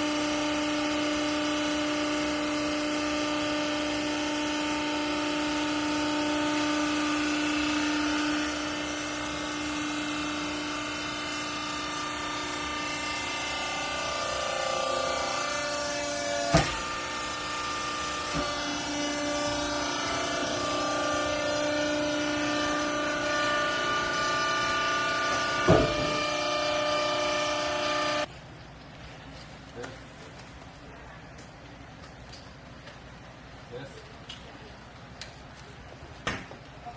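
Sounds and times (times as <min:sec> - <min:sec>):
hydraulic pump humming and whining: 0:00.0 - 0:28.3.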